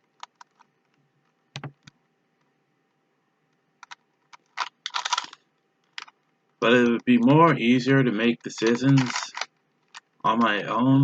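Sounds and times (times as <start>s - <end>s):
plastic puzzle cube clicking: 0.1s - 0.7s, 3.8s - 6.2s, 8.6s - 10.6s.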